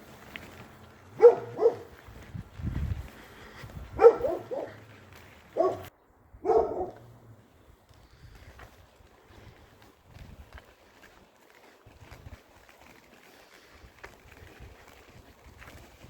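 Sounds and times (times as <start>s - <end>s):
dog barking: 1.1s - 1.9s, 4.0s - 4.8s, 5.6s - 7.0s.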